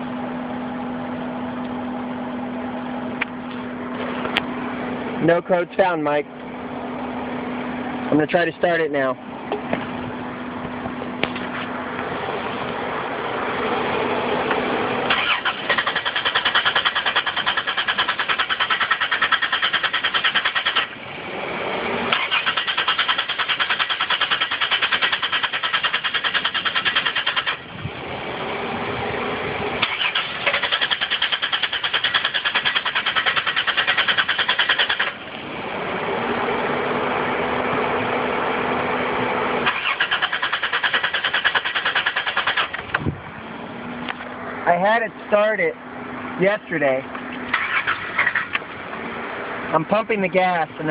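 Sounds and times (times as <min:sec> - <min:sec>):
steady hum: 0:00.0 - 0:22.1
car engine cranking: 0:15.0 - 0:21.1, 0:22.1 - 0:27.7, 0:29.8 - 0:35.4, 0:39.6 - 0:43.1, 0:47.4 - 0:49.0.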